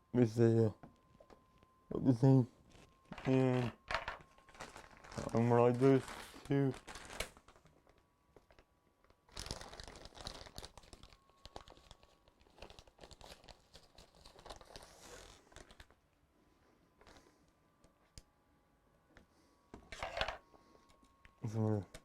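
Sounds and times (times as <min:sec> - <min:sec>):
crinkling and rustling: 0:02.6 - 0:16.2, 0:19.8 - 0:21.3.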